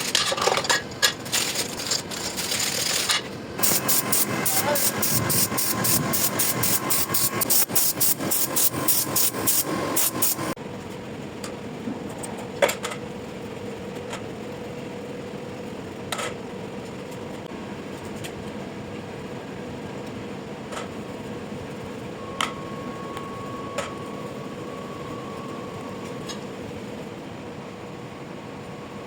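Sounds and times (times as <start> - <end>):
loud machine running: 1.3 - 10.6, 22.1 - 29.0
electric motor hum: 3.6 - 10.6, 22.2 - 29.0.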